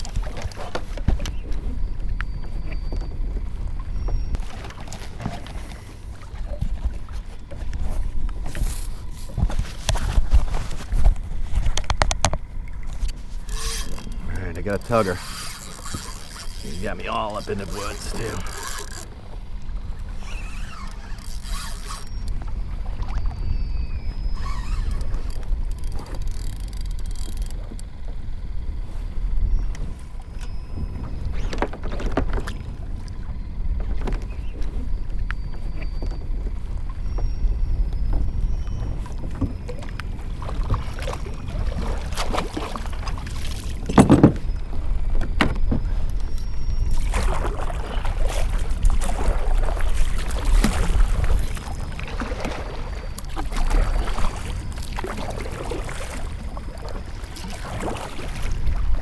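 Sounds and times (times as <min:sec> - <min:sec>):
water slapping kayak hull: 0:00.0 - 0:59.0
wind rumbling on microphone: 0:00.0 - 0:59.0
water splashing: 0:39.0 - 0:44.5, 0:46.9 - 0:59.0
knocks on kayak hull: 0:43.9 - 0:44.4.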